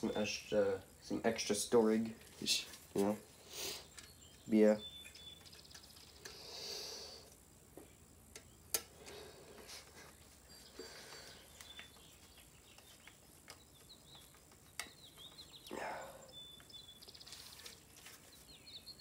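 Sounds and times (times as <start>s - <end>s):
faint bird chirps: 3.4s - 9.7s, 10.4s - 19.0s.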